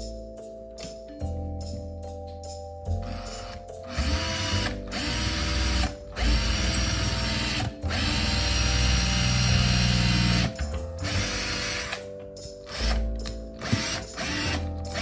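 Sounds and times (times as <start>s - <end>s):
background music: 0.0s - 15.0s
cordless drill spinning: 3.0s - 12.0s, 12.7s - 13.0s, 13.6s - 15.0s.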